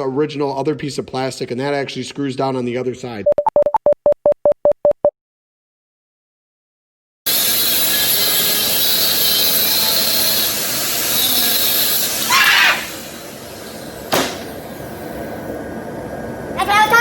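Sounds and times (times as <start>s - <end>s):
sharp knock: 14.1s - 14.5s.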